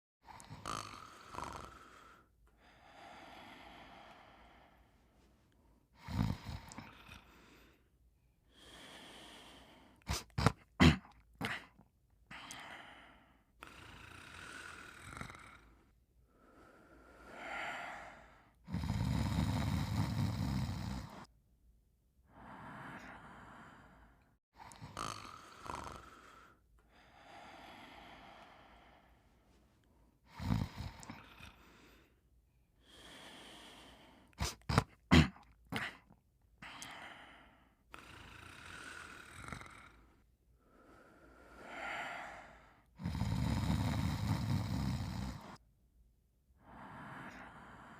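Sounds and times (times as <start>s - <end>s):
cartoon snoring: 0.2s - 4.7s, 6.0s - 7.8s, 8.5s - 13.0s, 13.6s - 21.3s, 22.3s - 29.1s, 30.2s - 32.1s, 32.8s - 45.6s
long loud low snore: 0.2s - 5.0s, 5.9s - 7.9s, 12.3s - 21.3s, 22.3s - 29.3s, 30.2s - 32.2s, 36.6s - 45.6s, 46.6s - 47.9s.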